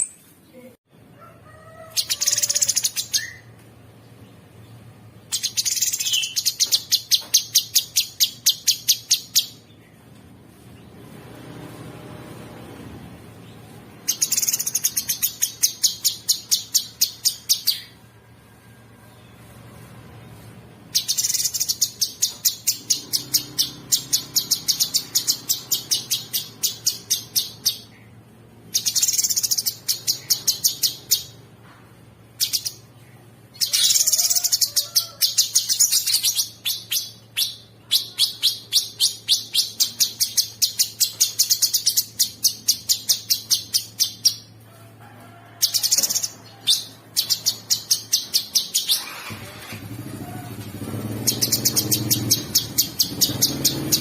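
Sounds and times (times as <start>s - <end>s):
bird singing harsh fast notes: 1.9s - 3.5s, 4.3s - 10.0s, 13.5s - 18.0s, 20.9s - 31.4s, 32.4s - 44.6s, 45.8s - 49.4s, 50.9s - 54.0s.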